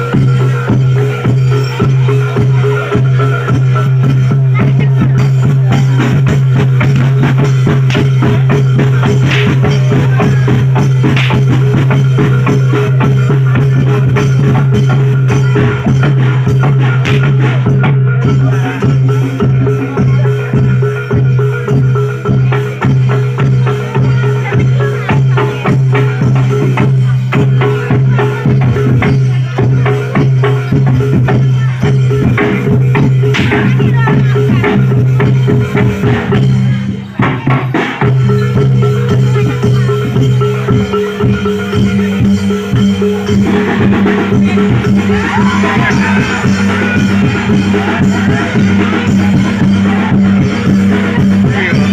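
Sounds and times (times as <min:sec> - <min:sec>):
repeating higher melody: 0:00.0 - 0:37.2, 0:38.0 - 0:51.9
drum strokes: 0:00.0 - 0:51.9
fast gamelan percussion: 0:00.0 - 0:51.9
steady low held tone: 0:38.0 - 0:51.9.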